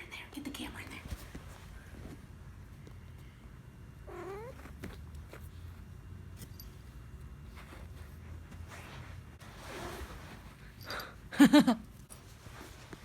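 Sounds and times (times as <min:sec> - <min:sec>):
cat purring: 0:04.0 - 0:04.8.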